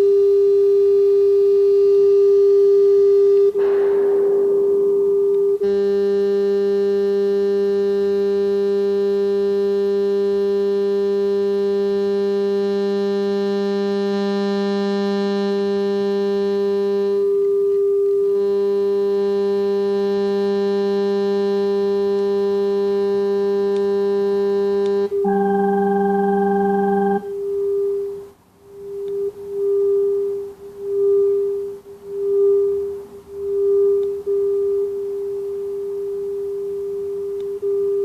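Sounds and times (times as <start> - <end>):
low buzzy tone layer: 0.0 - 9.8, 24.4 - 28.2
electronic test tone: 25.1 - 27.4.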